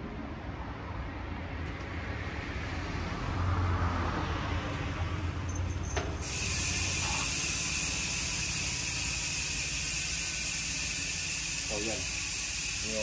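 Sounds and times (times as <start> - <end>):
bike hub ratchet buzzing: 5.5 - 13.0.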